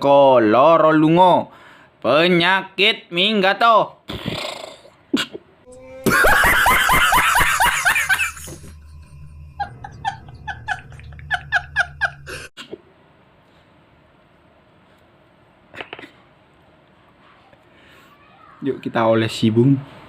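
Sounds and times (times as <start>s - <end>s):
person laughing loudly: 5.7s - 8.8s, 9.6s - 12.6s
soft rhythmic chuckling: 9.6s - 12.8s.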